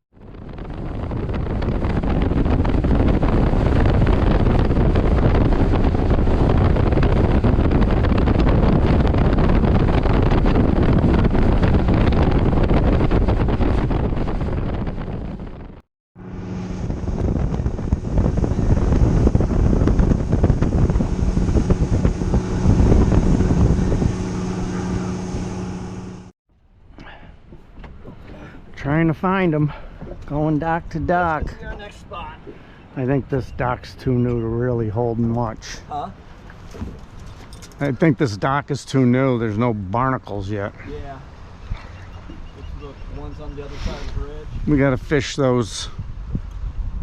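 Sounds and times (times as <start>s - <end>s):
wind buffeting microphone: 0.2s - 26.3s, 27.0s - 47.0s
boat motor running: 0.8s - 26.3s.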